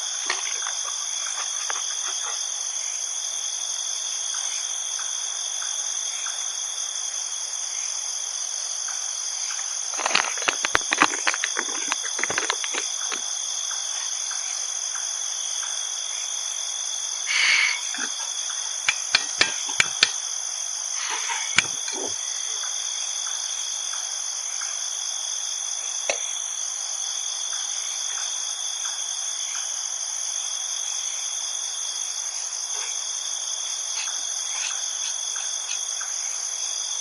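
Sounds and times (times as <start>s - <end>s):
crickets and insects trilling: 0.0s - 37.0s
rustling: 9.9s - 13.2s
sharp clicks and knocks: 18.9s - 20.2s.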